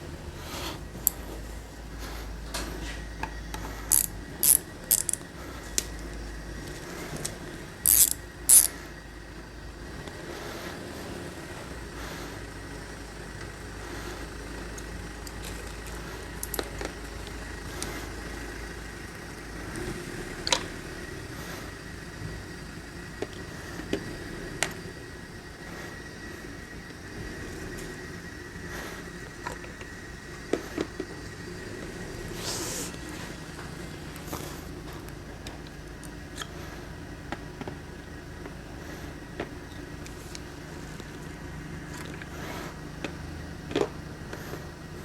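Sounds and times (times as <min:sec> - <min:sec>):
steady low hum: 0:00.0 - 0:45.0
hand tools clicking: 0:03.9 - 0:05.2, 0:07.1 - 0:08.8, 0:16.4 - 0:16.7.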